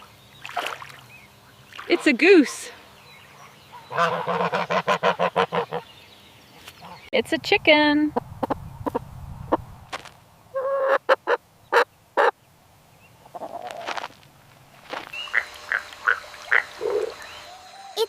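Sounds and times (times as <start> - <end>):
chicken clucking: 10.6 - 12.3.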